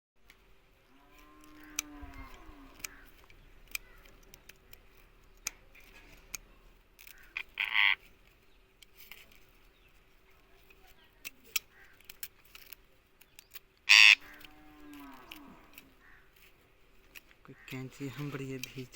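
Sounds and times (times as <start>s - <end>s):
parrot squawk: 7.4s - 8.0s, 13.9s - 14.4s.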